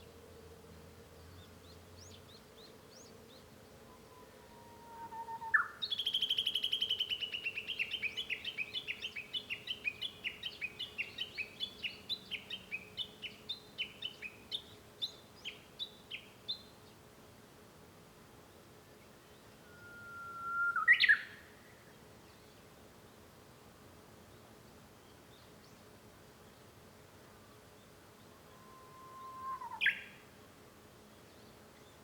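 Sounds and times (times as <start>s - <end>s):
bush warbler singing: 1.1s - 4.2s, 5.1s - 16.7s.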